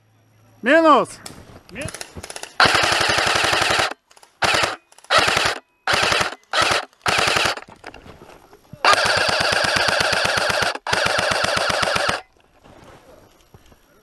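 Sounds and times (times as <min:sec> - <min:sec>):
airsoft rifle firing full auto: 0:01.8 - 0:07.8, 0:08.8 - 0:12.3.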